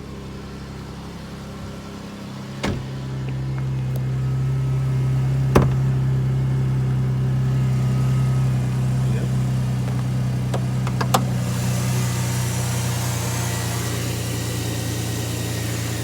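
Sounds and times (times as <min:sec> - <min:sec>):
car engine idling: 0:00.0 - 0:16.0
hood release clicks: 0:02.6 - 0:04.3, 0:05.3 - 0:06.3, 0:09.8 - 0:11.4.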